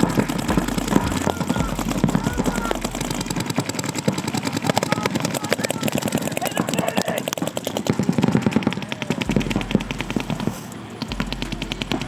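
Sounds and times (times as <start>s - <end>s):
paintball markers firing: 0.0s - 12.0s.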